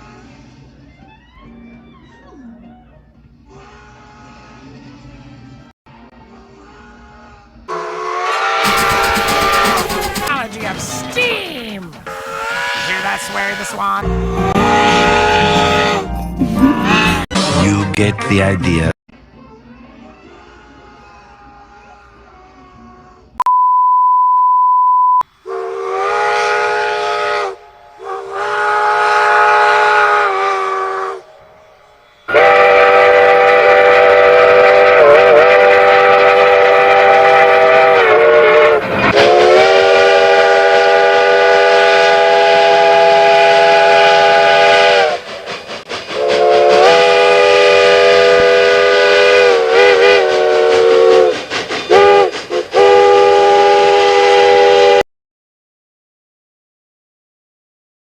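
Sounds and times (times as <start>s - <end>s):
steam locomotive chime whistle: 7.7s - 16.2s, 25.2s - 55.0s
steady single-pitch beep: 23.4s - 25.2s.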